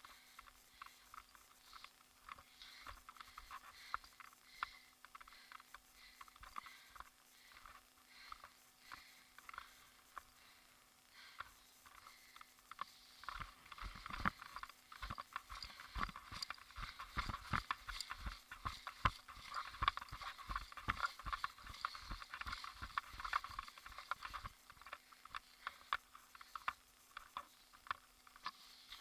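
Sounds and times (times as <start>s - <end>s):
footsteps in dry vegetation: 11.2s - 29.0s.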